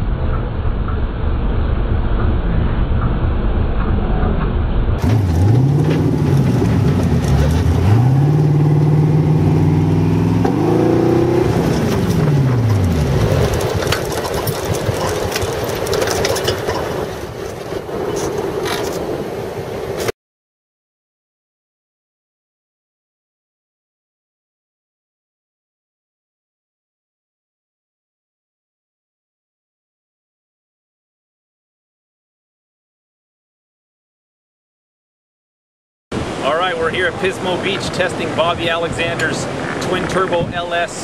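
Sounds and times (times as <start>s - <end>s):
steady rushing noise: 0.0s - 20.1s, 36.2s - 41.0s
engine revving: 0.1s - 17.1s.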